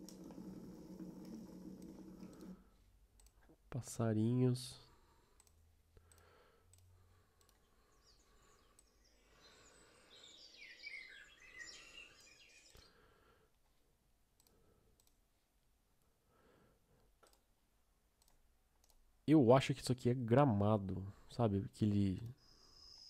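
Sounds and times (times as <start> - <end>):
soft mouse clicks: 1.2 - 3.6, 5.4 - 7.7, 8.6 - 9.1, 13.7 - 15.2, 17.0 - 17.5, 18.2 - 19.1
faint recorded birdsong: 6.1 - 13.5, 22.3 - 23.0.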